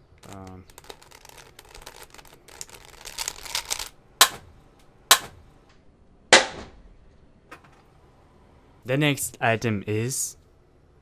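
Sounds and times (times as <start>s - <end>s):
packaging crinkling and rustling: 0.2s - 4.0s.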